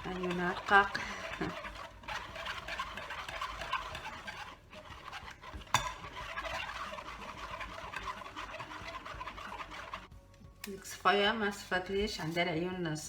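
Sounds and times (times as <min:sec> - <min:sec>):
spoon scraping mesh strainer: 0:00.0 - 0:10.1.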